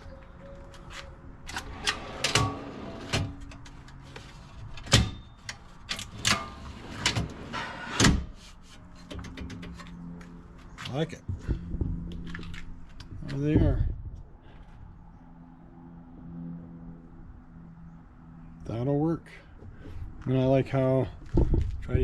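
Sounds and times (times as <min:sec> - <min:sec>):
drawers sliding on runners: 0:01.5 - 0:03.4, 0:06.1 - 0:08.2.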